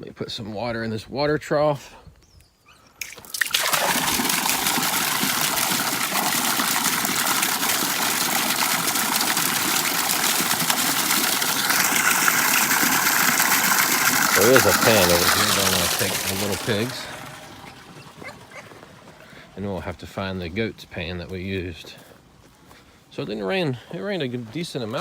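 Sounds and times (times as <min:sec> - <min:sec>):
water running into trough: 0:03.0 - 0:20.4.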